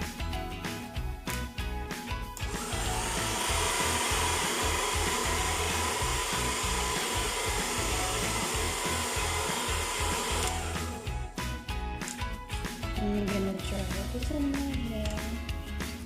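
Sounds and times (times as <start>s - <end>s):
hair dryer running: 2.4s - 11.3s.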